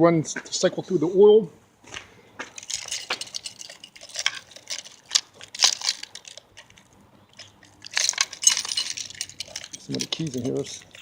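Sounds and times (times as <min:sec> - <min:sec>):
metal keys jingling: 0:02.5 - 0:11.0.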